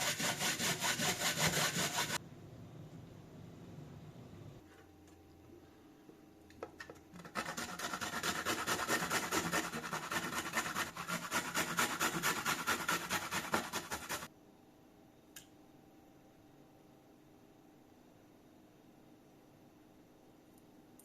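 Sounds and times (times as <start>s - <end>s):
fast rasping scraping strokes: 0.0s - 2.2s, 7.2s - 14.3s.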